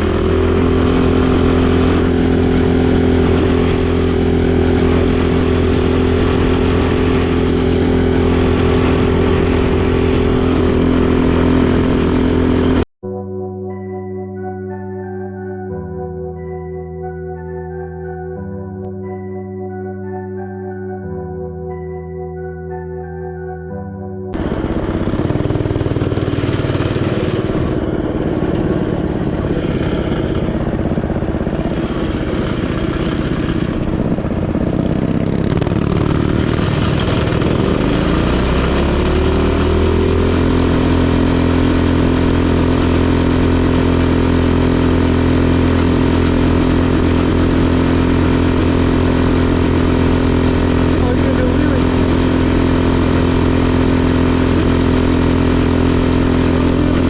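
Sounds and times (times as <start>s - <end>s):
mini bike engine running: 0.0s - 12.8s, 24.4s - 57.0s
rushing noise: 24.4s - 44.0s.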